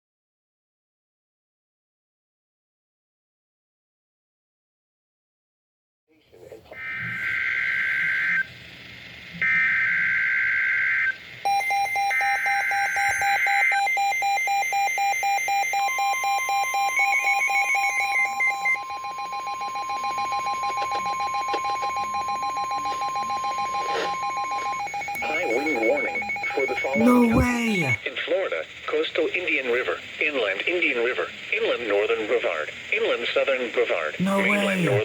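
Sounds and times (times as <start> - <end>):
steady long alert tone: 27.0 - 28.0, 34.2 - 35.0.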